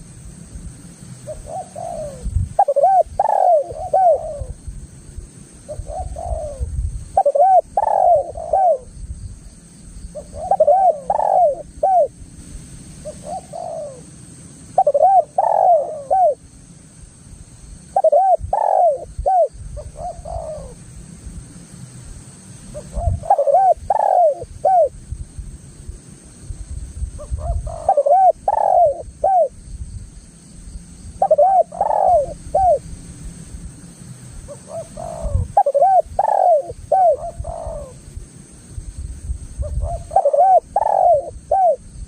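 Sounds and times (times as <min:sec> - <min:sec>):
dove cooing: 0:01.2 - 0:04.6, 0:05.7 - 0:09.0, 0:10.1 - 0:12.2, 0:13.0 - 0:14.1, 0:14.8 - 0:16.4, 0:17.9 - 0:20.8, 0:22.8 - 0:25.0, 0:27.2 - 0:29.6, 0:31.2 - 0:32.8, 0:34.5 - 0:38.0, 0:39.6 - 0:41.9.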